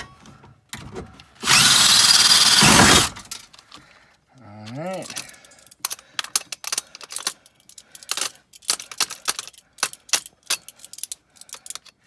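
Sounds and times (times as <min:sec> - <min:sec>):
metallic clicks of hand tools: 0:04.7 - 0:12.0.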